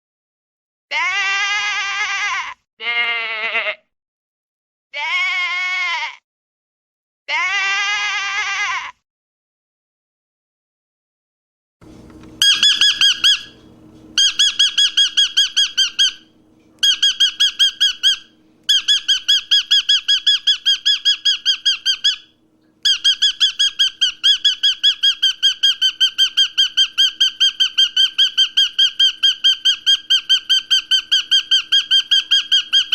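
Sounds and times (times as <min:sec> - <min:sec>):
parrot squawking rapidly: 0:12.4 - 0:13.6, 0:14.2 - 0:32.9.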